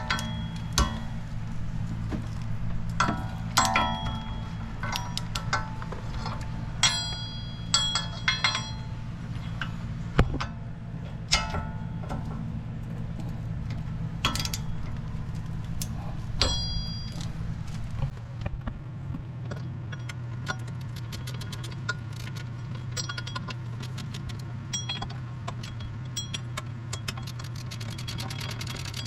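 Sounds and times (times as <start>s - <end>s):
sharp ringing knocks: 0.0s - 1.5s, 3.0s - 12.6s, 16.4s - 17.4s
metal tools clinking: 0.0s - 13.1s, 14.2s - 17.9s, 22.6s - 29.0s
steady low hum: 0.0s - 28.4s.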